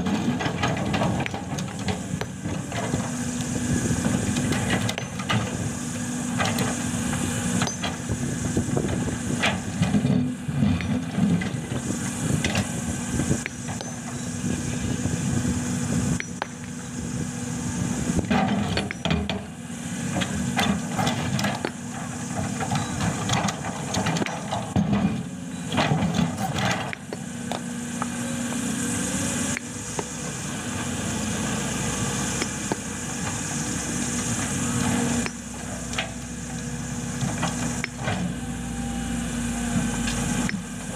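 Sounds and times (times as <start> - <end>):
excavator diesel engine under load: 0.0 - 40.9.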